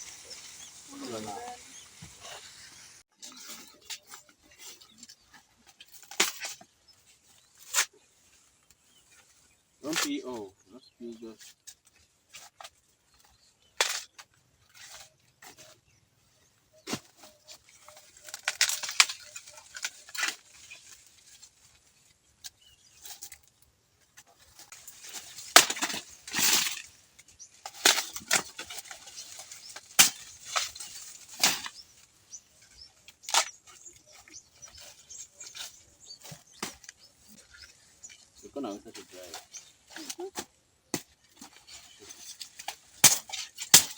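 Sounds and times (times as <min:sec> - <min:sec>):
dry plants rustling: 0:00.0 - 0:43.9
sharp snaps and cracks: 0:05.8 - 0:06.7, 0:17.0 - 0:21.0, 0:24.2 - 0:32.1, 0:33.0 - 0:38.2.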